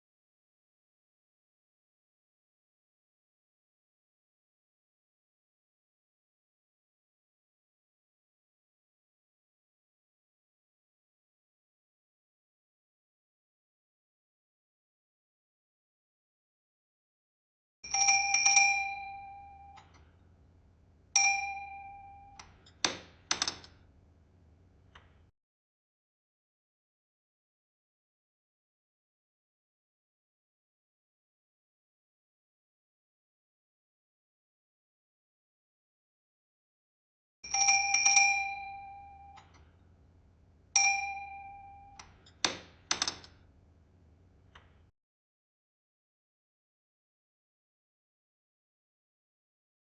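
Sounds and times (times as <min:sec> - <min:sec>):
door bell jingling: 0:17.9 - 0:19.8, 0:37.5 - 0:39.4
sharp clunks: 0:22.4 - 0:23.8, 0:42.0 - 0:43.4.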